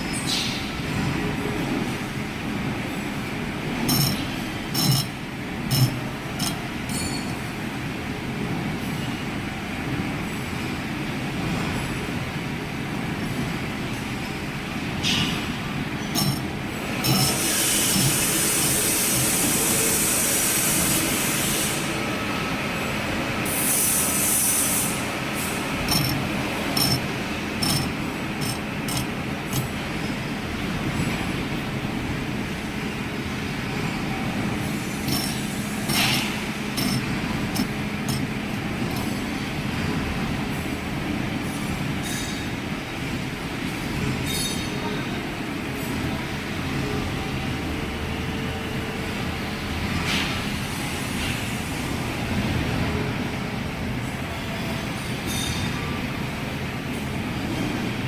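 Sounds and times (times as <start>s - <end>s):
metal lathe humming: 3.2s - 7.5s, 16.0s - 19.2s, 24.2s - 30.2s, 34.3s - 39.6s.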